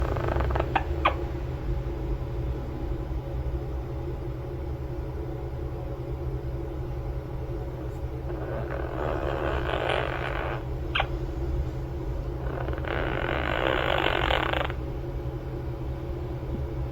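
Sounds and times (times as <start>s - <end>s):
parrot snoring: 0.0s - 1.4s, 7.9s - 11.2s, 12.4s - 14.8s
steady low hum: 0.0s - 16.9s.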